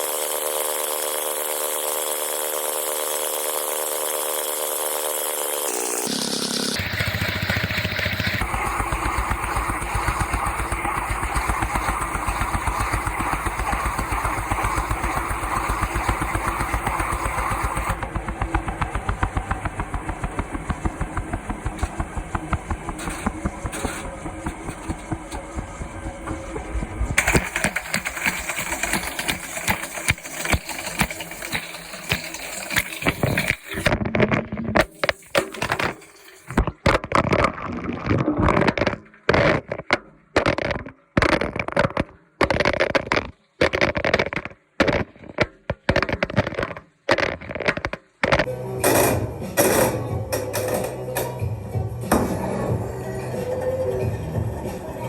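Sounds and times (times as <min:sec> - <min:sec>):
washing machine running: 0:00.0 - 0:34.0, 0:34.8 - 0:36.7, 0:48.8 - 0:55.0
clicks and knocks: 0:06.8 - 0:51.4.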